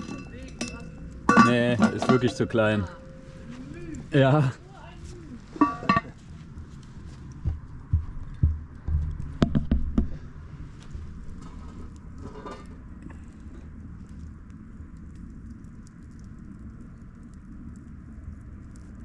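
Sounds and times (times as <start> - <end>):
low background noise: 0.0 - 19.0
dull thumps: 7.5 - 10.3
sharp knocks: 8.0 - 10.2.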